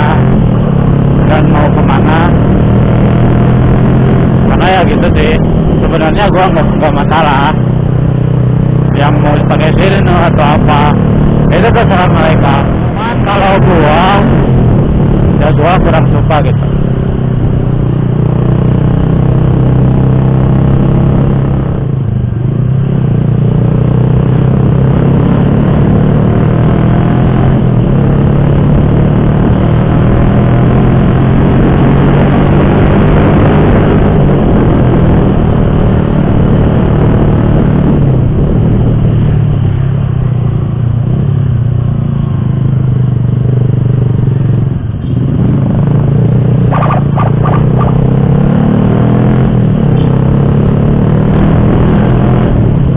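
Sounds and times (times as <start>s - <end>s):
heavy wind and road rush: 0.0s - 52.9s
motorcycle engine running: 0.0s - 52.9s.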